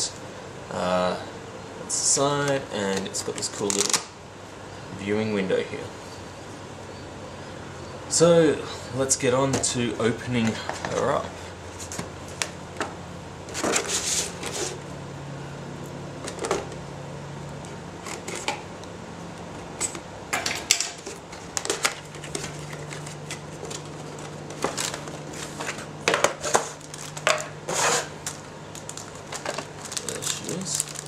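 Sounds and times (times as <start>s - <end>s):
cardboard box and plastic handled: 21.0s - 31.0s.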